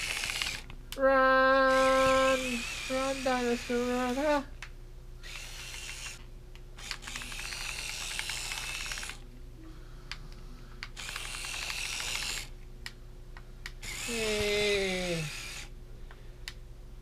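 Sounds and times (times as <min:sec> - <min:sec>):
toy robot motor whirring: 0:00.0 - 0:00.7, 0:01.6 - 0:04.5, 0:05.2 - 0:06.2, 0:06.8 - 0:09.2, 0:10.9 - 0:12.5, 0:13.8 - 0:15.7.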